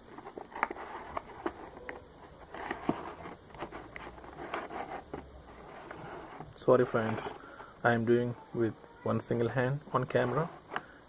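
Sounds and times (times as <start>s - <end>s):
plastic packaging crackling: 0.0s - 7.7s.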